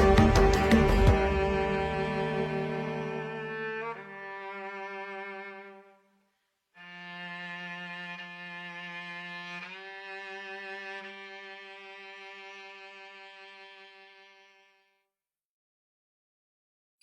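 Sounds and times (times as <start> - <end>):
held bowed string note: 0.0 - 5.8.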